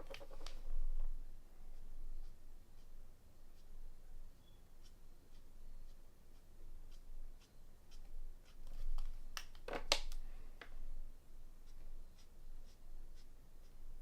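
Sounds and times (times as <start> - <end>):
marker scratching on card: 1.7 - 3.0, 4.8 - 9.2, 11.6 - 13.8.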